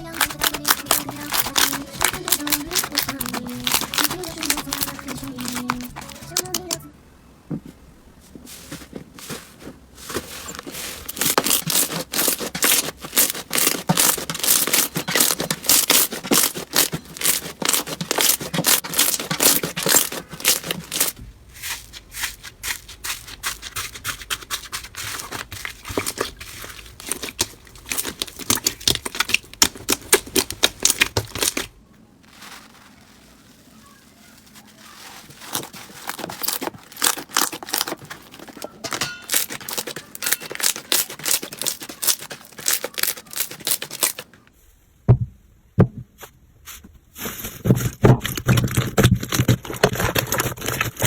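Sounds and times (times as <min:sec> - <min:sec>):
slime crackling and popping: 0:00.0 - 0:06.8, 0:10.6 - 0:21.2, 0:22.6 - 0:44.3.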